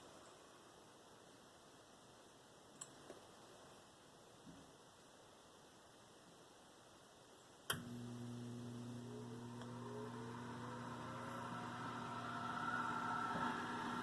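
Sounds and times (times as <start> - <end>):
fan whine and air rush: 7.7 - 14.0
oven fan motor hum: 7.7 - 14.0.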